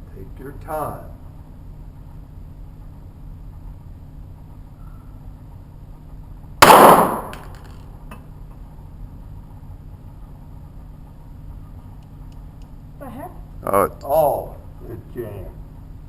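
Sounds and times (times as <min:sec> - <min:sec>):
pistol shot: 0:06.6 - 0:07.6.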